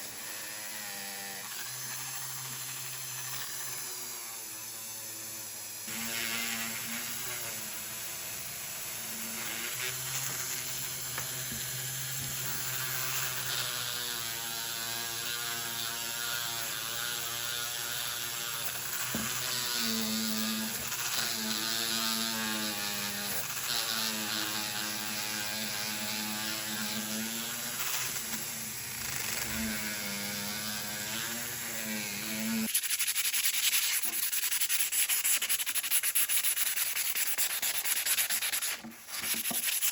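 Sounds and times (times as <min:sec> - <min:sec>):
rotary tool whining on steel: 0:00.0 - 0:32.7
sandpaper rubbing metal: 0:09.2 - 0:11.0, 0:29.2 - 0:39.9.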